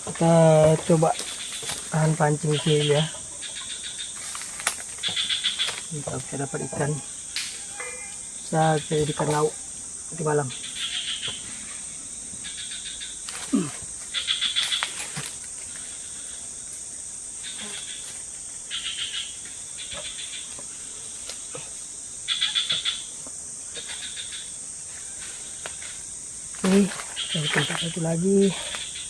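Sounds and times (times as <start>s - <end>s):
insects droning: 0.0s - 29.0s
rapid-pulsed chirping calls: 6.5s - 9.7s.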